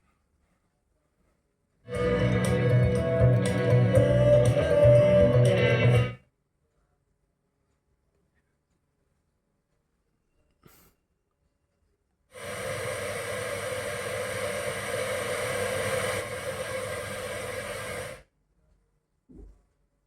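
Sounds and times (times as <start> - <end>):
steady rushing hiss: 12.4 - 18.2.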